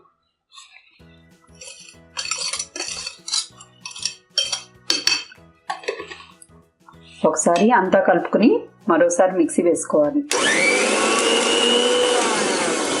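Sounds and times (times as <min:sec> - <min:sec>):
soft background music: 0:00.5 - 0:13.0
spoon scraping inside grinder jar: 0:01.5 - 0:06.5.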